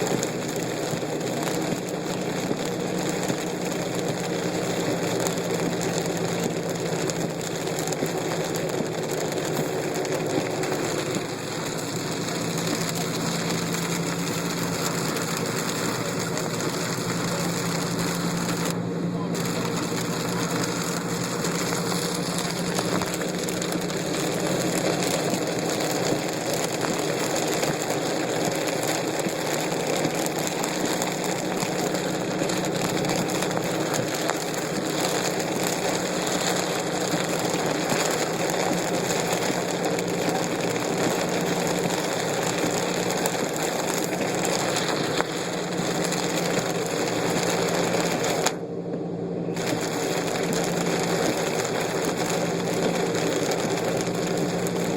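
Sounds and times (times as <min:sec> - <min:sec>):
rain and water washing: 0:00.0 - 0:48.6, 0:49.5 - 0:54.9
car engine and road hum: 0:00.0 - 0:54.9.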